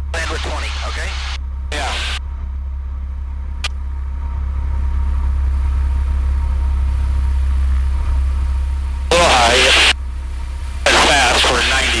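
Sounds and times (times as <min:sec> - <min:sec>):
airplane engine droning: 0:00.0 - 0:12.0.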